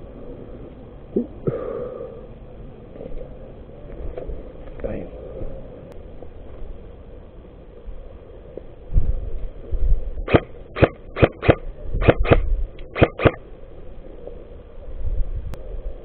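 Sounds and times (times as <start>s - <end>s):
movement rumble: 0.0s - 16.0s
wind: 0.0s - 16.0s
airsoft gun shots: 10.2s - 13.4s.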